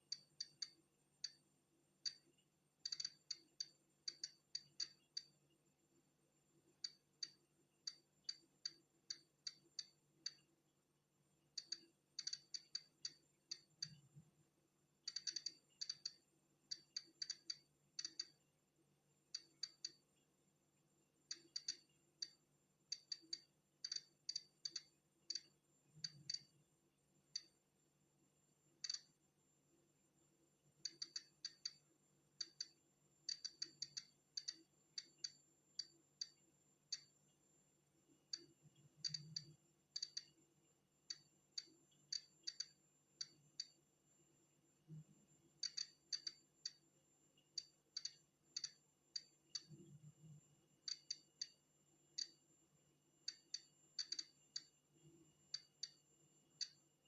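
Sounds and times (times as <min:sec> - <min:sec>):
geiger counter clicking: 0:00.1 - 0:01.4, 0:02.0 - 0:05.4, 0:06.7 - 0:10.5, 0:11.6 - 0:14.1, 0:15.0 - 0:18.4, 0:19.3 - 0:20.1, 0:21.3 - 0:26.6, 0:27.3 - 0:27.6, 0:28.8 - 0:29.2, 0:30.8 - 0:37.1, 0:38.3 - 0:40.4, 0:41.1 - 0:43.8, 0:45.6 - 0:46.8, 0:47.6 - 0:49.9, 0:50.8 - 0:51.6, 0:52.2 - 0:52.4, 0:53.2 - 0:54.8, 0:55.5 - 0:56.0, 0:56.6 - 0:56.8.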